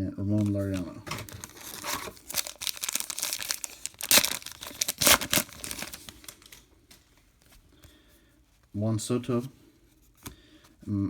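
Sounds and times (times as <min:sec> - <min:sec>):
plastic wrapper crinkling: 0:00.4 - 0:07.0.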